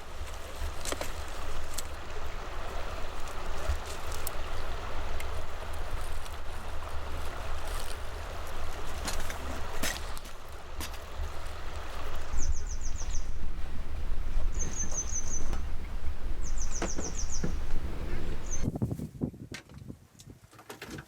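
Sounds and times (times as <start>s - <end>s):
creek water running: 0.0s - 18.8s.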